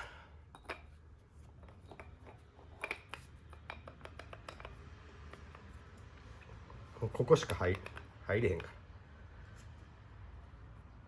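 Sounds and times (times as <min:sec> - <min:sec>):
light metal clicks and taps: 0:01.9 - 0:05.7.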